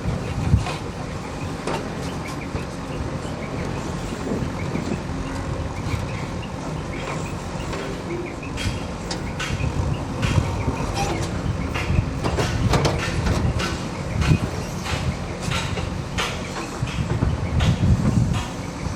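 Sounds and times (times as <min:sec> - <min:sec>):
diesel engine rumbling: 0:00.0 - 0:18.9
sharp metallic knocks: 0:07.0 - 0:18.7.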